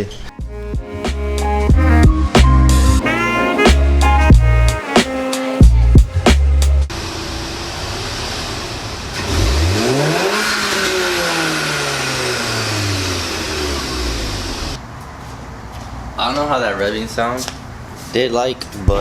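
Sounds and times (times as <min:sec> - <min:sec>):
car engine idling and revving: 0:05.9 - 0:14.8.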